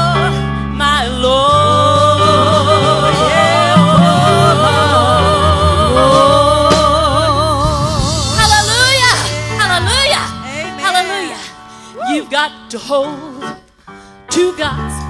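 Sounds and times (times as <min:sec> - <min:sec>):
gospel singers with vibrato: 0:00.0 - 0:13.6
bass line: 0:01.0 - 0:10.7.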